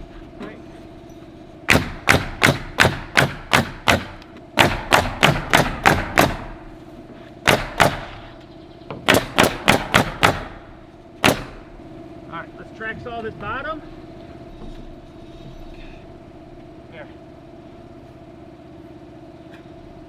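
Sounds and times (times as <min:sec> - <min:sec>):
steady low hum: 0:00.0 - 0:20.0
nails hammered into roof: 0:01.7 - 0:06.6, 0:07.4 - 0:08.3, 0:09.0 - 0:11.7.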